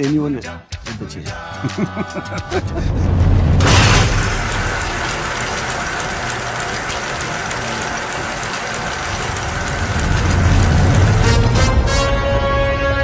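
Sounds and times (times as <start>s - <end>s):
sustained music: 1.7s - 13.0s
rumbling mechanical sound effect: 2.5s - 11.9s
faint ratcheting ticks: 4.4s - 11.2s.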